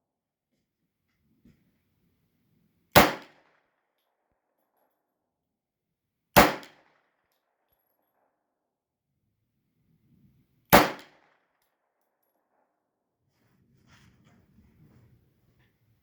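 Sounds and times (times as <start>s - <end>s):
pistol shots: 3.0s - 3.4s, 6.4s - 6.8s, 10.7s - 11.3s.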